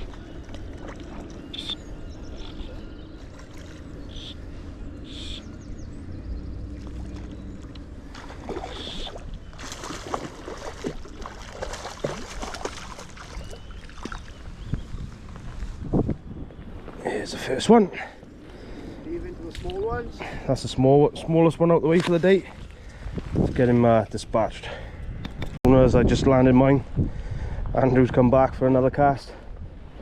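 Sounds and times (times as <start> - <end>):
water splashing and sloshing: 0.0 - 15.9
wind rumbling on microphone: 0.0 - 30.0.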